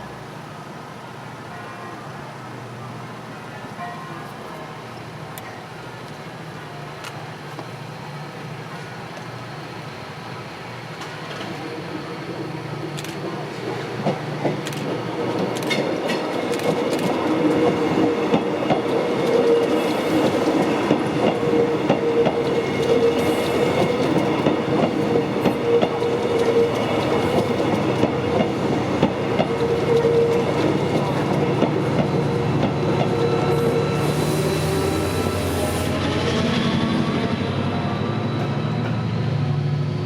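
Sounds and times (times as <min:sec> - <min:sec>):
train passing: 0:00.0 - 0:40.0
train wheels clicking over rail joints: 0:12.8 - 0:33.6.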